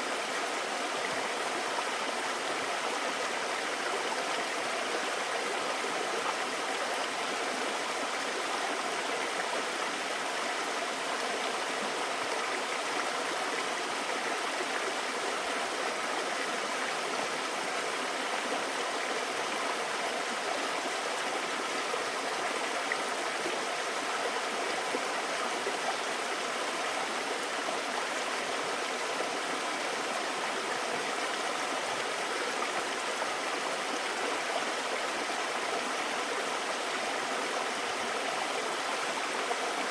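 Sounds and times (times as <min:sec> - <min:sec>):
stream rushing over rocks: 0:00.0 - 0:39.9.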